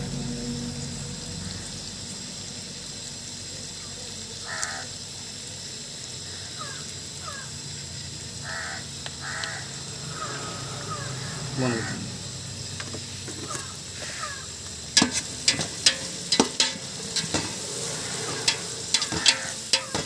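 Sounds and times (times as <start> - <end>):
crow cawing: 4.4 - 5.0, 6.3 - 7.6, 8.4 - 12.4, 13.3 - 14.6
small birds chirping: 6.2 - 14.8.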